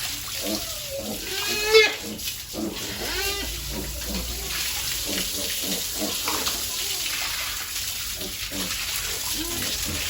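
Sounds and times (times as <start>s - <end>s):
piglets squealing: 0.4s - 6.4s.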